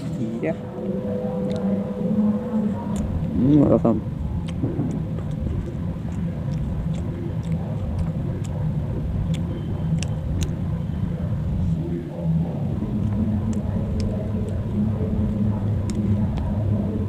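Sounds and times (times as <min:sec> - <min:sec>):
steady low rumble: 0:00.0 - 0:17.0
mouth clicks: 0:01.4 - 0:01.8, 0:02.6 - 0:17.0
person chewing food: 0:04.3 - 0:11.9, 0:12.7 - 0:16.7.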